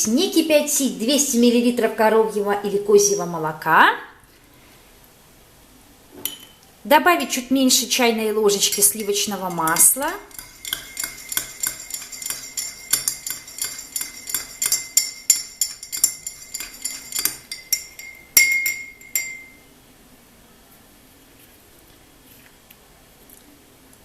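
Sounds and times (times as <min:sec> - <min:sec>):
teaspoon clinking against cup: 0:08.5 - 0:19.7.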